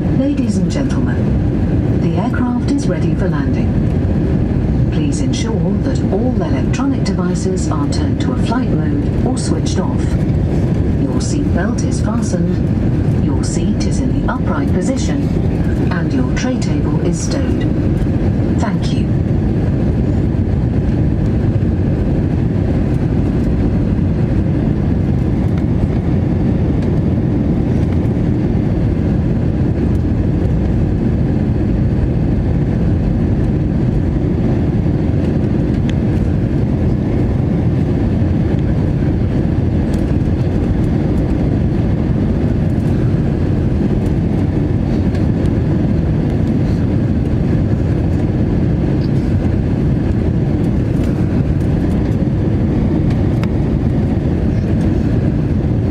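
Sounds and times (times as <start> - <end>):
airliner cabin engine rumble: 0.0 - 55.9
faint steady hum: 0.0 - 55.9.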